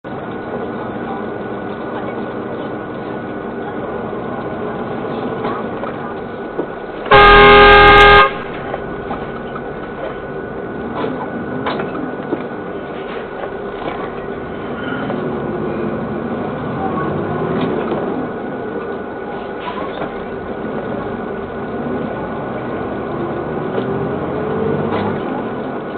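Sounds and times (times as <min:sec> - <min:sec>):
traffic and road noise: 0:00.0 - 0:25.9
car horn blast: 0:07.1 - 0:08.6.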